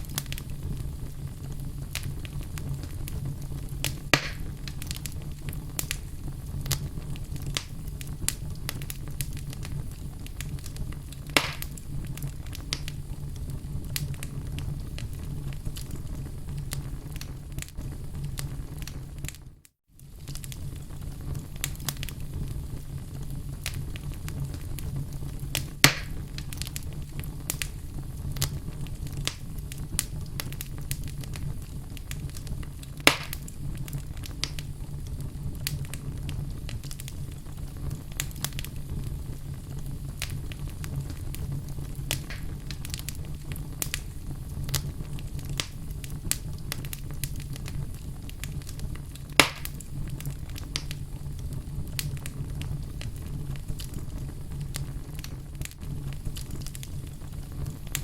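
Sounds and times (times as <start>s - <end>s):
fire crackling: 0.0s - 58.0s
flames rumbling: 0.0s - 58.0s
loud sharp pops: 3.8s - 5.1s, 11.3s - 11.8s, 25.6s - 26.2s, 33.0s - 33.5s, 42.1s - 42.7s, 49.4s - 49.8s.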